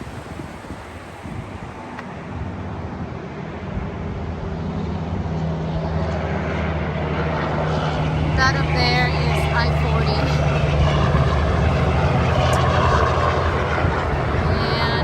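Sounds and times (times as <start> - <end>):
highway traffic drone: 0.0 - 15.0.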